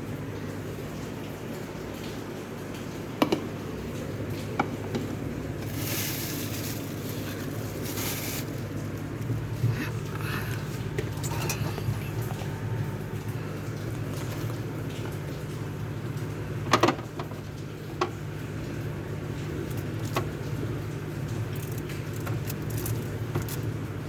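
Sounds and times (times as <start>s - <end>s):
refrigerator low hum: 0.0s - 24.0s
rustling: 5.6s - 8.7s.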